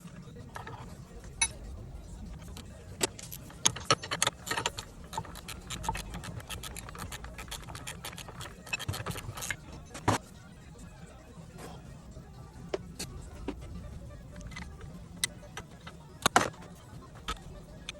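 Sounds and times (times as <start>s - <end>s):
steady low hum: 0.0s - 17.9s
metal tools clinking: 0.6s - 10.2s.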